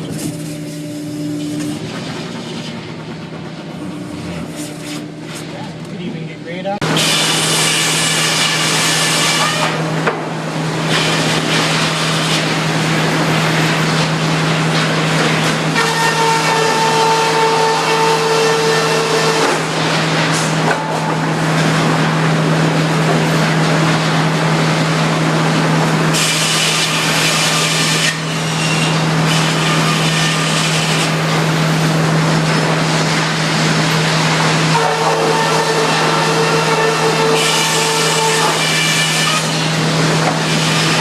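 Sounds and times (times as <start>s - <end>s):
sawmill machine hum: 0.0s - 41.0s
saw cutting lumber: 6.8s - 21.3s, 26.1s - 41.0s
high-pitched saw whine: 34.6s - 39.8s.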